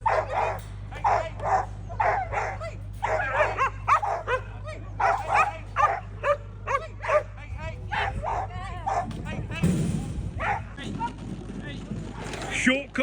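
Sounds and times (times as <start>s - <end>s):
dog barking and yelping: 0.0s - 9.1s, 10.4s - 10.7s.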